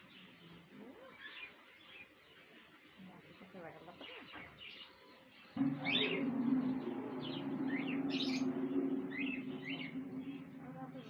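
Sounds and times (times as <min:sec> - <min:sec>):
steady low hum: 0:05.6 - 0:11.0.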